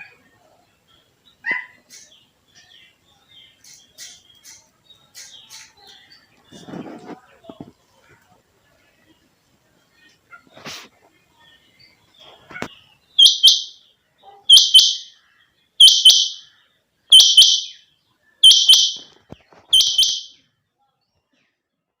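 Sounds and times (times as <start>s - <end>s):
quail two-note calls: 13.2s - 13.8s, 14.5s - 15.1s, 15.8s - 16.4s, 17.1s - 17.8s, 18.4s - 19.1s, 19.8s - 20.3s.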